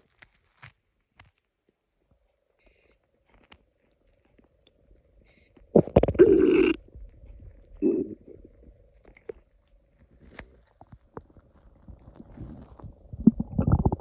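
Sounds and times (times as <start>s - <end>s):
stomach gurgling and growling: 4.5s - 14.0s.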